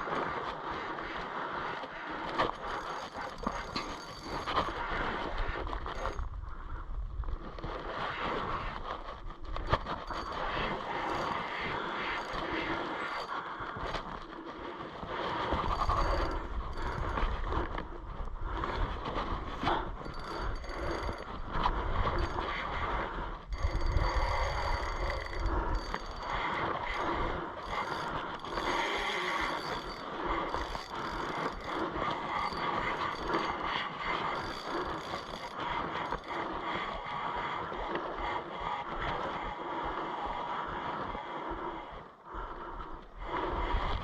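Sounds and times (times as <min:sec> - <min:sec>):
fishing reel whirring and clicking: 0:02.2 - 0:06.3, 0:09.6 - 0:14.3, 0:15.4 - 0:18.9, 0:19.6 - 0:22.5, 0:23.5 - 0:37.0.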